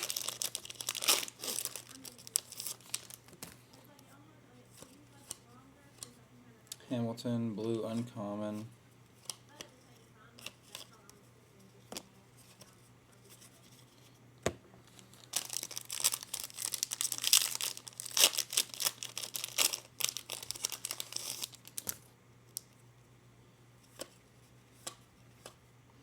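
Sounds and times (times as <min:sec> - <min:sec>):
wrapper tearing and crinkling: 0:00.0 - 0:03.6, 0:14.9 - 0:22.0.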